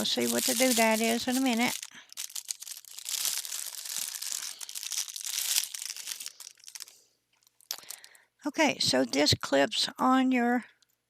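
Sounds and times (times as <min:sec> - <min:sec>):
packaging crinkling: 0:00.0 - 0:08.2.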